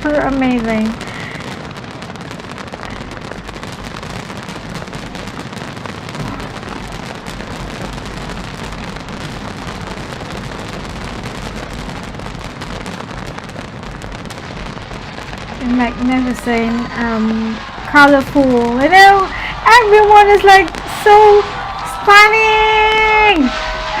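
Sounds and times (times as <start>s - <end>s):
fireworks crackling: 0.0s - 24.0s
loud firework pop: 5.9s - 7.1s.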